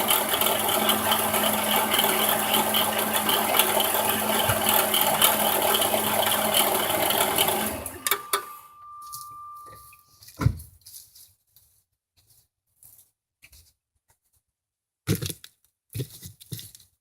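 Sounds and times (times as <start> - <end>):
alternator rattling grinding whir: 0.0 - 8.8
clicks: 7.7 - 9.8
steady beep: 8.0 - 10.0.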